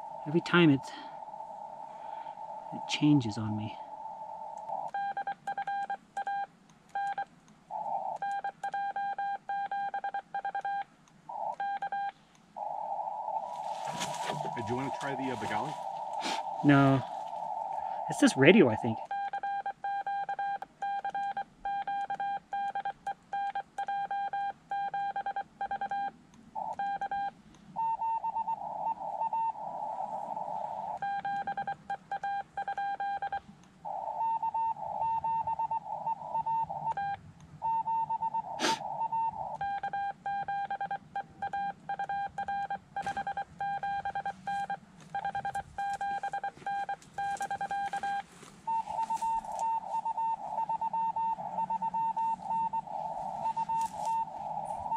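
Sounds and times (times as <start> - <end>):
radio hiss: 0.0 - 4.9, 12.6 - 19.1, 38.4 - 39.6, 46.5 - 54.9
morse code tone: 13.6 - 16.1, 37.7 - 54.9.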